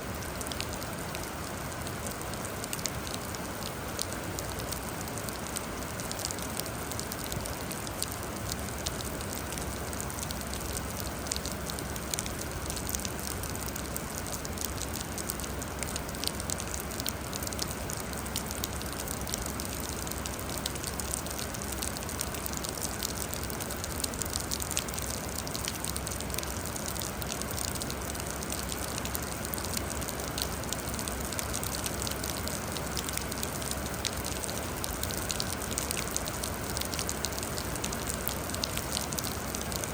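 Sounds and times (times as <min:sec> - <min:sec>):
raindrops ticking: 0:00.0 - 0:39.9
steady rain hiss: 0:00.0 - 0:39.9.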